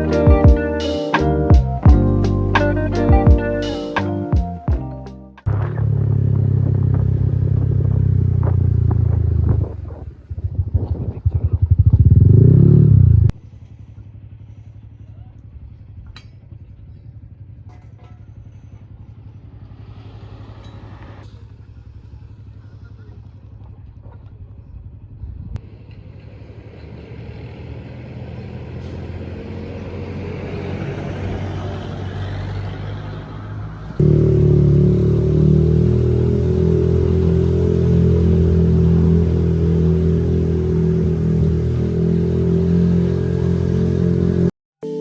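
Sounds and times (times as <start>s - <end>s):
motorcycle engine running: 0.0s - 4.8s, 5.5s - 20.1s, 21.3s - 25.8s, 33.5s - 44.5s
held low tones: 0.0s - 13.3s, 33.8s - 44.5s.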